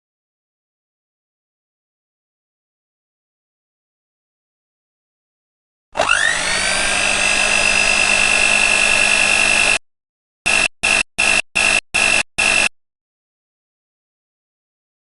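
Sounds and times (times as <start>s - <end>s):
blender motor whining: 6.0s - 9.8s, 10.5s - 12.7s
stuttered blender sample chops: 6.0s - 9.8s, 10.5s - 12.7s.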